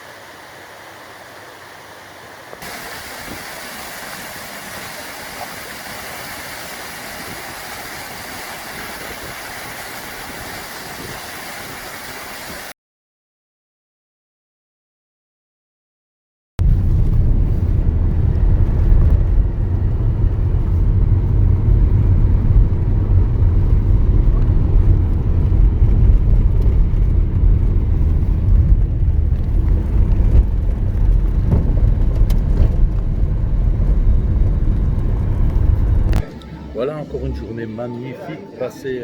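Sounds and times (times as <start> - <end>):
moving vehicle rumble: 16.6 - 38.6.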